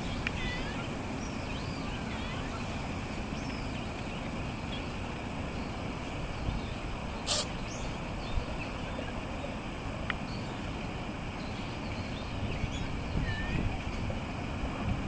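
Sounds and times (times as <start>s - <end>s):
cat sneezing: 7.3s - 7.5s.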